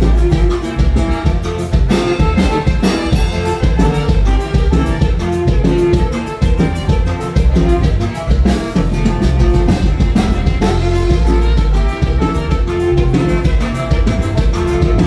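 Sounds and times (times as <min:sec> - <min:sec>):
bass: 0:00.0 - 0:15.0
saxophone melody: 0:00.0 - 0:15.0
steady drum beat: 0:00.0 - 0:15.0.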